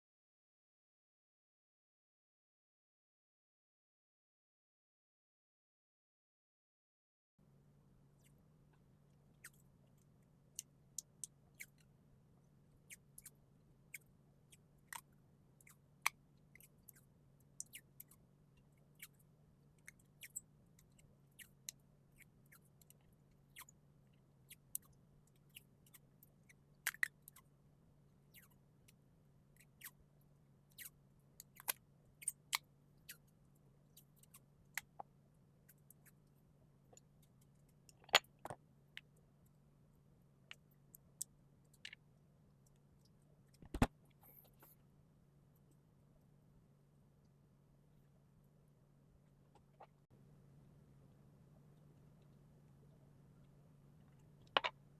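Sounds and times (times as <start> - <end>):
low steady hum: 7.4 - 54.9.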